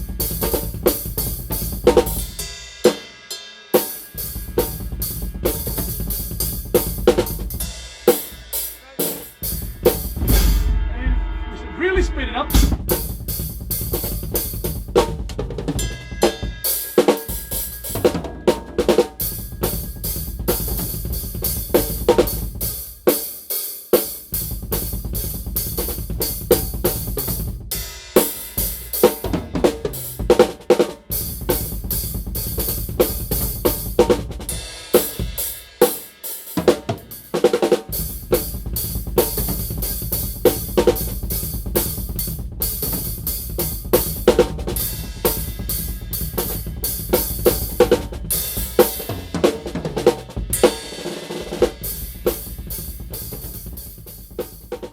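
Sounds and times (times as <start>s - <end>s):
drum kit groove with fills: 0.0s - 54.9s
cymbals crashing: 2.3s - 5.2s, 7.6s - 13.6s, 15.8s - 21.2s, 44.8s - 49.4s
snare drum: 3.8s - 54.9s
kick drum: 9.5s - 15.4s.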